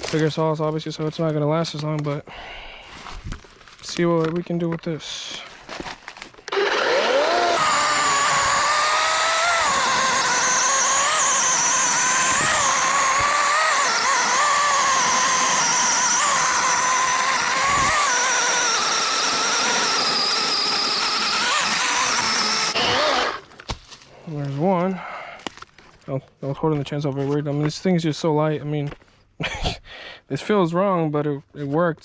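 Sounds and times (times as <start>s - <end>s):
electric chainsaw cutting log: 6.4s - 23.6s.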